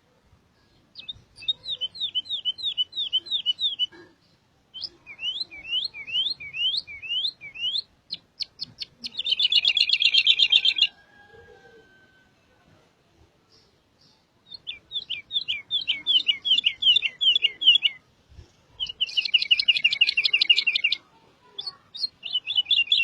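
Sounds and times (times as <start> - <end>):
songbird whistled notes: 4.8 - 8.2.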